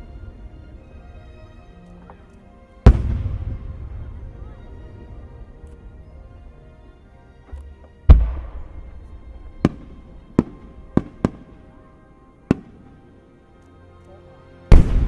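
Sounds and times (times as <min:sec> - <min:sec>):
faint music: 0:00.0 - 0:15.0
firework cracks: 0:02.9 - 0:04.3, 0:08.1 - 0:11.5, 0:14.7 - 0:15.0
fireworks booming: 0:02.9 - 0:04.6, 0:08.1 - 0:11.6, 0:14.7 - 0:15.0.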